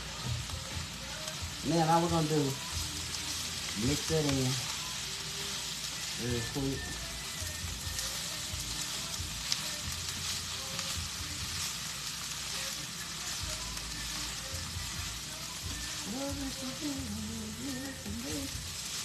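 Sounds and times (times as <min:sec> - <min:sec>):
food sizzling in a hot pan: 0:00.0 - 0:19.0.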